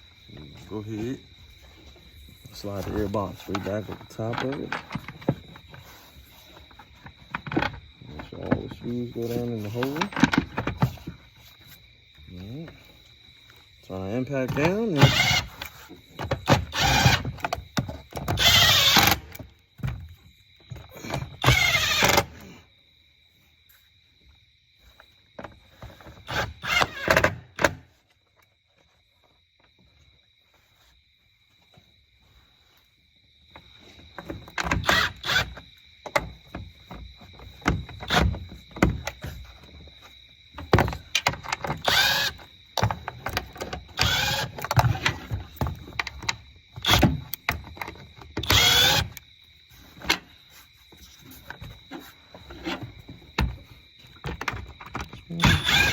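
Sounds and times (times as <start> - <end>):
impact driver bursts: 15.0 - 15.5, 16.6 - 17.2, 41.8 - 42.4, 44.0 - 44.6, 48.4 - 49.1, 55.4 - 55.9.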